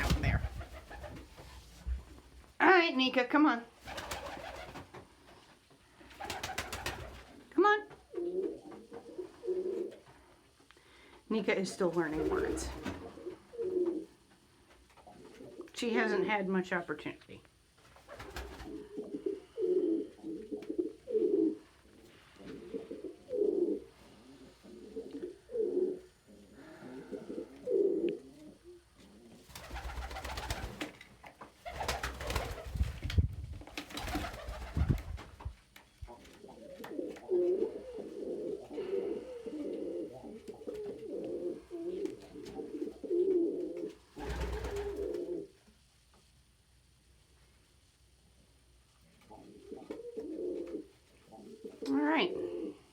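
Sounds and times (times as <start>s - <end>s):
pigeons cooing: 8.1s - 10.2s, 12.1s - 14.2s, 18.1s - 30.8s, 36.1s - 45.5s, 49.3s - 52.9s.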